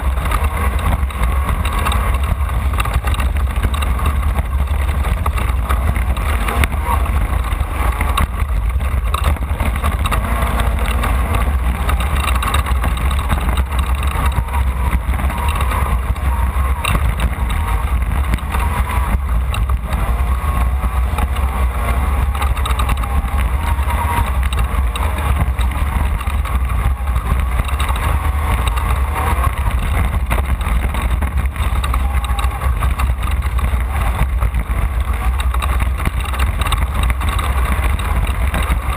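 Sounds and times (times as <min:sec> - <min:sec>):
race car engine rumble: 0:00.0 - 0:38.9
road noise: 0:00.0 - 0:38.9.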